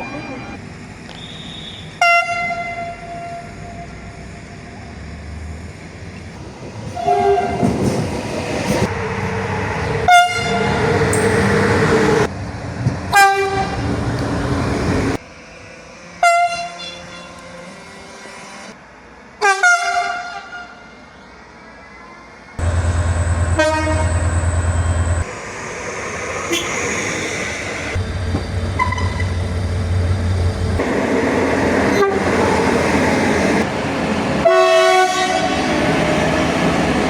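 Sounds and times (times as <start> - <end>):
train air horn blasts: 1.2 - 3.6, 7.0 - 7.6, 10.1 - 11.4, 16.2 - 18.6, 19.4 - 20.9, 23.4 - 24.3, 34.4 - 35.7
passing train rumbling: 1.9 - 37.0.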